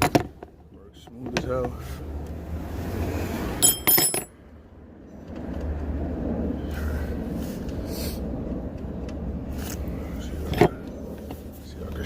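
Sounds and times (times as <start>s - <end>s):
metal tools clinking: 3.6s - 4.3s.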